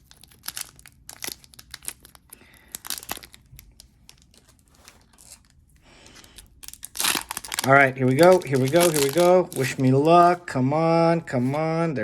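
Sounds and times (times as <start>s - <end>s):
foil wrapper crinkling and tearing: 0.0s - 10.4s.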